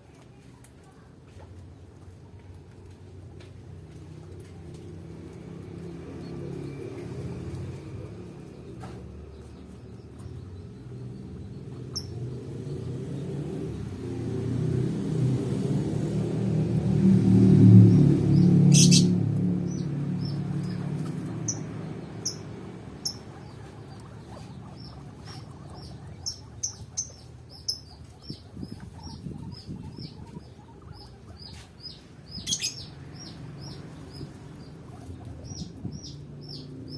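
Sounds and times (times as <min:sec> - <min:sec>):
small birds chirping: 0:00.1 - 0:36.9
low hum: 0:10.4 - 0:31.5.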